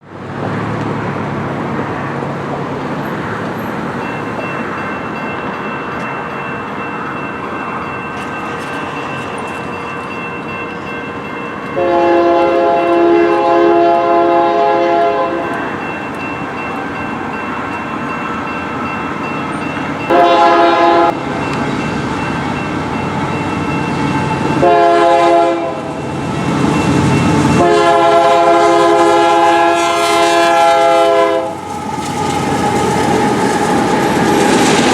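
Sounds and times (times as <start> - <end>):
train rumble: 0.0 - 34.9
crossing warning bell: 1.6 - 34.9
locomotive air horn blasts: 11.8 - 15.6, 20.1 - 21.2, 24.6 - 26.0, 27.6 - 31.6.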